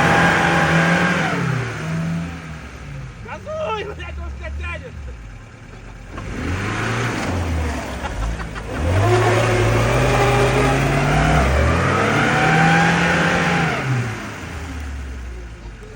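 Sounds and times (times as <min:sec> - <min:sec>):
car engine revving hard: 0:00.0 - 0:15.6.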